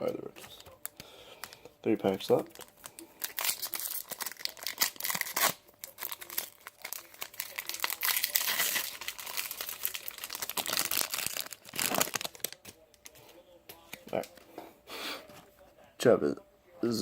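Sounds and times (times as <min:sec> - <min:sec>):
foil wrapper tearing and crinkling: 0:00.4 - 0:13.1.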